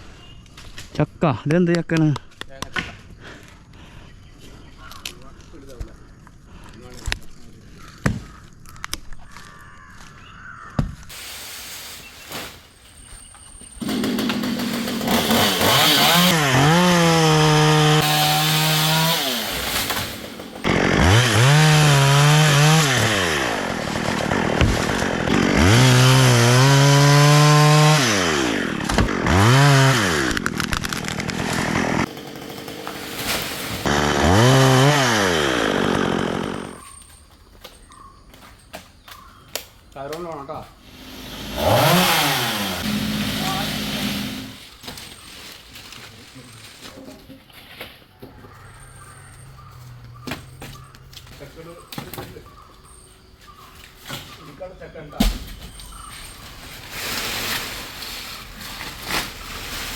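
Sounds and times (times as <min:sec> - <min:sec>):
chainsaw revving and cutting wood: 0:13.8 - 0:36.9, 0:40.8 - 0:44.6.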